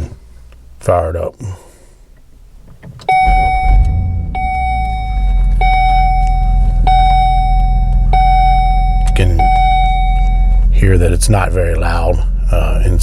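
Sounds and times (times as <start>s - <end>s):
car engine starting and idling: 0.0s - 13.0s
dashboard warning chime: 3.0s - 11.3s.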